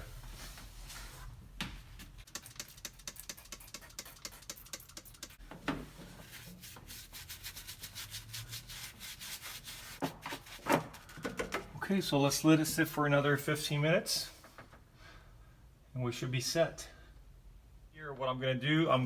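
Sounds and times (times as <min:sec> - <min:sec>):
brush scrubbing metal: 0:02.2 - 0:11.0.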